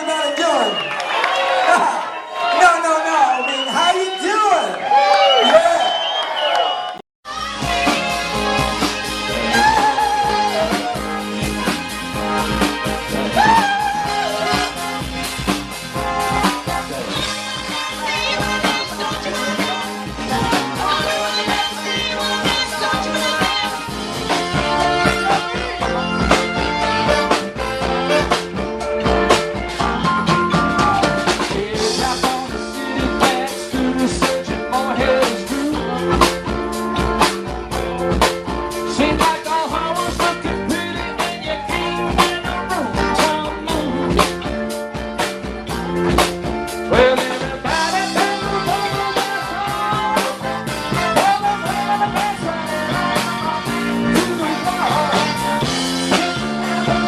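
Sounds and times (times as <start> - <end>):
drum kit beat: 7.2 - 57.0
guitar: 7.2 - 57.0
person singing: 7.3 - 15.0, 16.1 - 26.7, 31.0 - 36.8, 38.8 - 44.4, 46.9 - 57.0.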